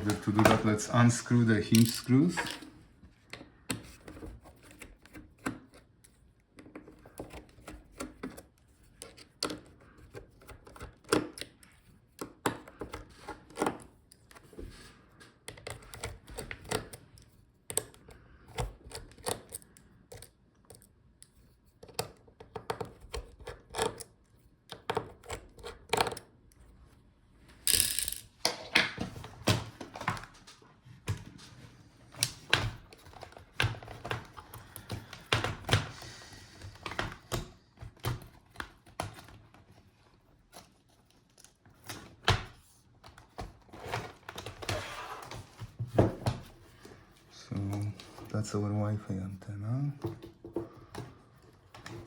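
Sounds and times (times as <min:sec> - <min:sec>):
plastic and metal parts handled: 0:00.0 - 0:26.4, 0:32.1 - 0:36.0.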